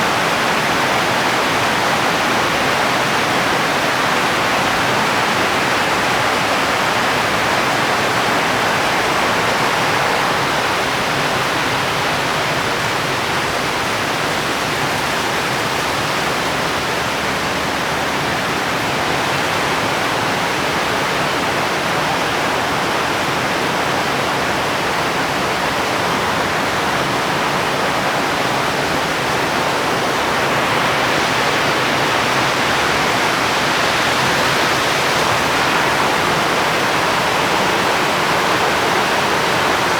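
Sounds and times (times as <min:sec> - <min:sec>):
heavy rainfall: 0:00.0 - 0:39.9.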